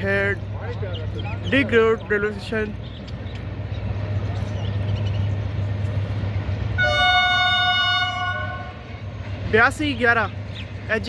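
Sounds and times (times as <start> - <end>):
locomotive engine rumble: 0.0 - 11.0
locomotive horn blast: 6.8 - 9.1.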